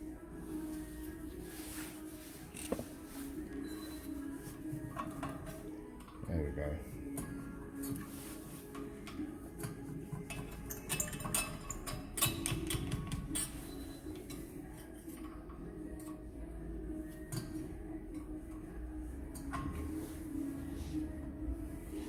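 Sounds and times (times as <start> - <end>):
metal tools clinking and rattling: 9.1 - 15.4.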